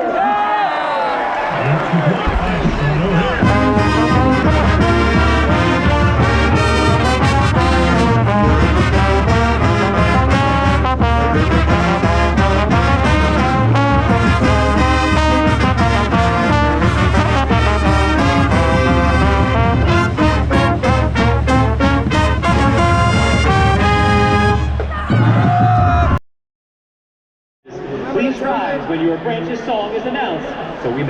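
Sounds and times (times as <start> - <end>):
marching band playing: 1.6 - 25.8.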